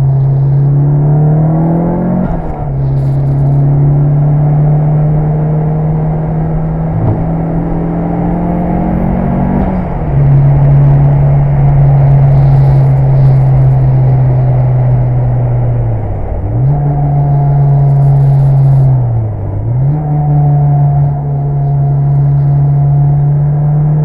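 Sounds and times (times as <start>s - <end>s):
car engine running hard: 0.0s - 24.0s
road and wind rumble: 0.0s - 24.0s.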